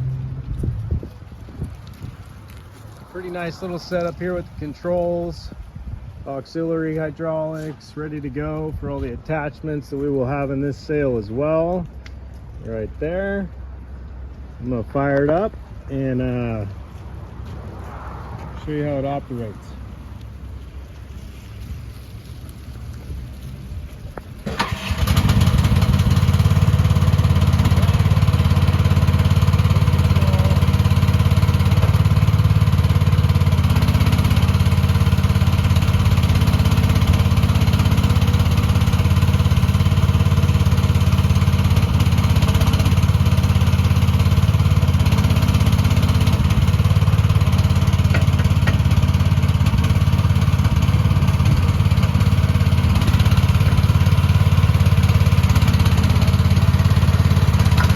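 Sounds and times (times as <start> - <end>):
small excavator engine starting: 24.3 - 57.9.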